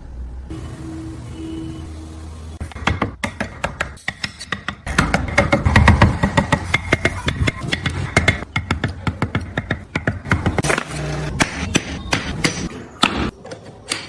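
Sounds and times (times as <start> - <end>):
carving tools tapping wood: 2.7 - 10.7.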